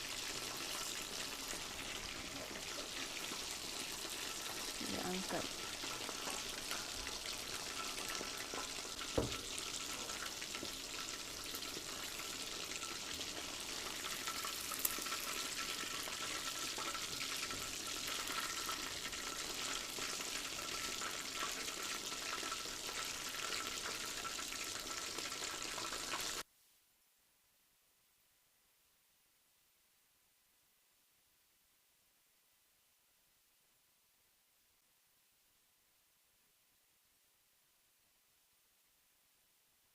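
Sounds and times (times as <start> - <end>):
chicken frying in hot oil: 0.0 - 26.4
sharp knock: 9.2 - 9.4.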